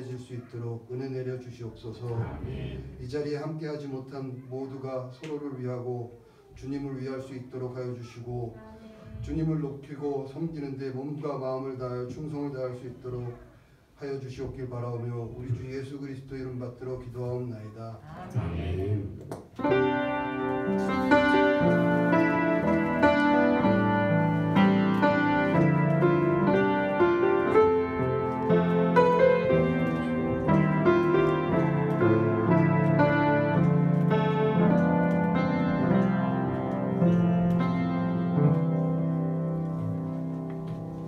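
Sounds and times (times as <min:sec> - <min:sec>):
keyboard playing slow chords: 0:19.7 - 0:41.0.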